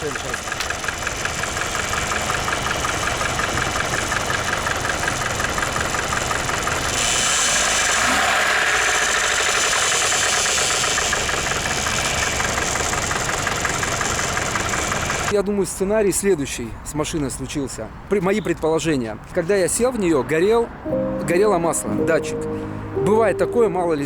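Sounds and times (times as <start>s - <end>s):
car engine with rhythmic knock: 0.0s - 15.3s.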